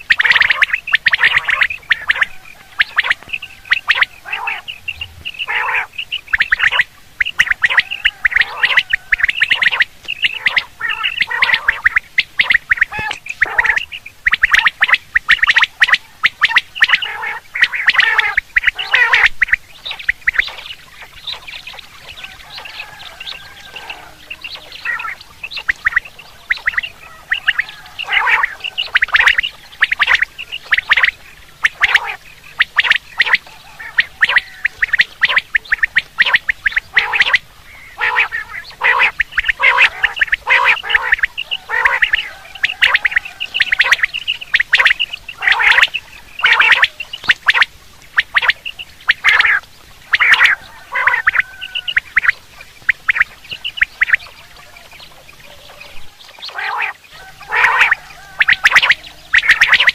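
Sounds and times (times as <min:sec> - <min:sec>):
quail calling: 0:00.0 - 0:59.9.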